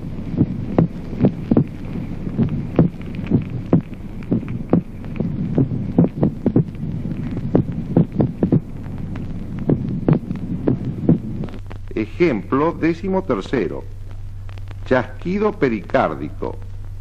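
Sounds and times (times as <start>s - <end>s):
irregular heartbeat: 0.0s - 12.7s
steady low hum: 0.0s - 17.0s.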